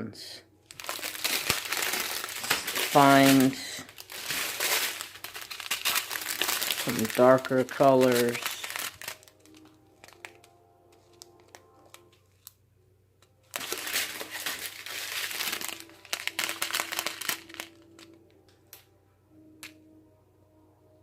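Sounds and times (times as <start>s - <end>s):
plastic rustling: 0.6s - 12.5s, 13.5s - 18.2s
plastic packets crinkling: 0.6s - 12.6s, 13.4s - 18.3s.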